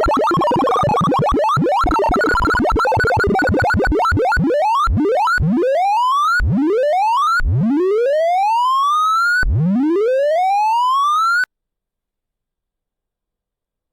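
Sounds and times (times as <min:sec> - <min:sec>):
synthesized rising tone sweeps: 0:00.0 - 0:05.4.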